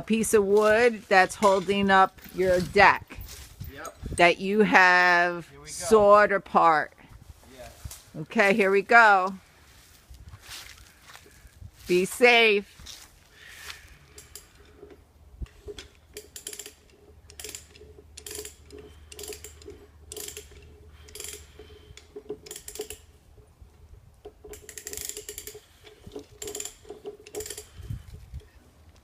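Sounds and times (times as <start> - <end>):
ratchet pawl clicking: 15.7 - 23.1, 24.4 - 27.9.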